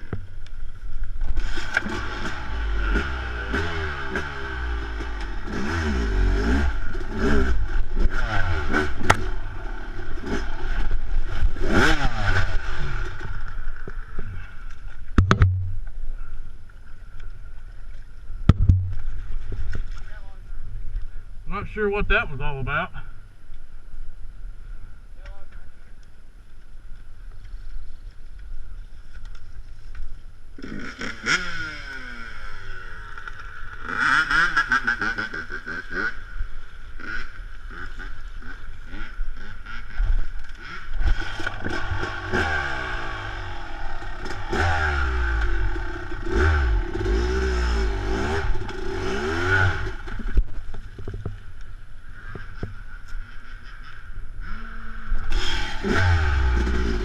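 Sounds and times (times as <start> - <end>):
dirt bike engine revving: 1.4 - 14.6, 30.6 - 50.4, 54.4 - 57.0.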